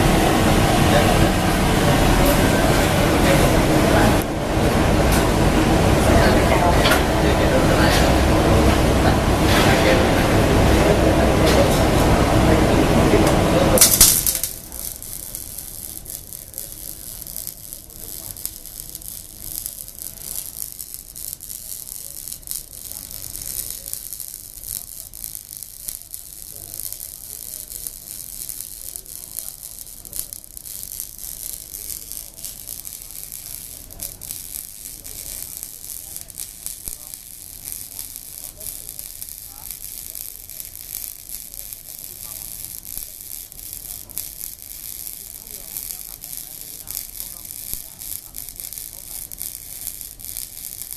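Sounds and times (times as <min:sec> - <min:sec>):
loud rushing noise: 0:00.0 - 0:14.4
arc welder crackling and hissing: 0:00.0 - 0:50.9.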